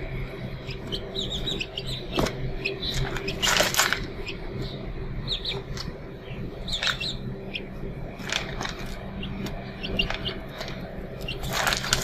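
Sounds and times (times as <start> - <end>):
low steady hum: 0.0 - 12.0
rustling: 11.4 - 12.0.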